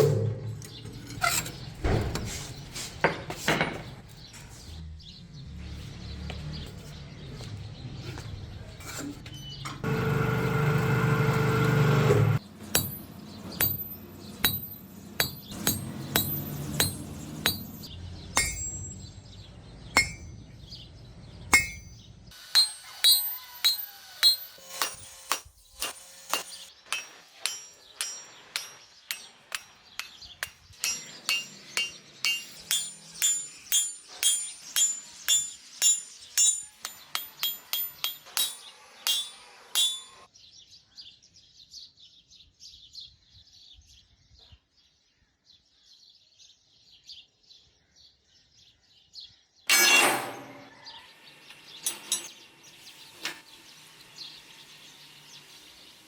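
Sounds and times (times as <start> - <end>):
hammer ringing on anvil: 12.7 - 19.2, 20.0 - 20.4, 21.5 - 25.4, 26.3 - 40.3.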